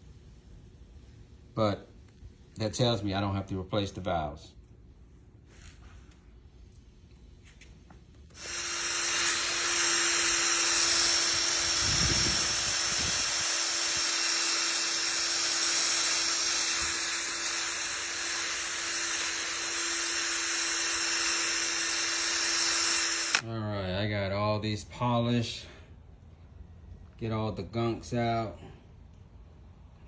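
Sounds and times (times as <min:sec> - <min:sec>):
handheld power tool running: 0:08.4 - 0:23.5.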